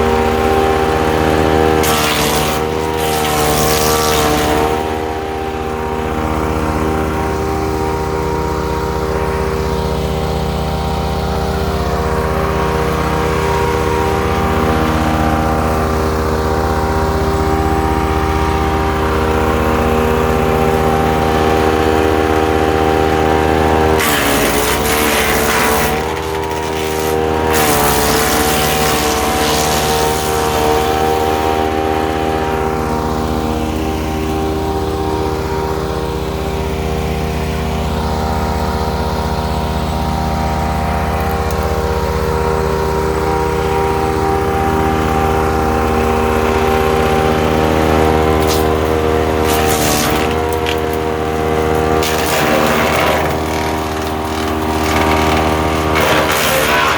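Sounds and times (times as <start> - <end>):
branches crackling in chipper: 0.0 - 4.9, 18.9 - 33.5, 40.8 - 56.9
woodchipper engine running: 0.0 - 56.9.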